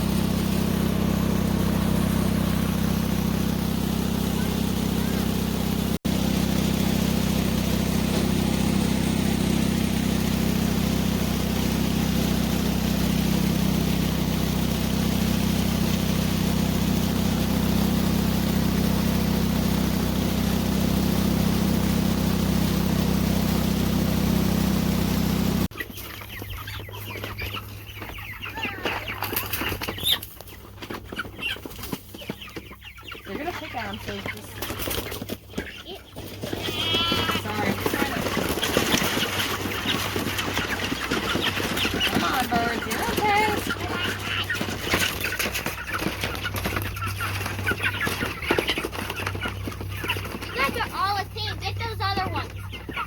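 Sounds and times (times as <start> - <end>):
chickens clucking and peeping: 0.0 - 53.0
engine humming: 0.0 - 53.0.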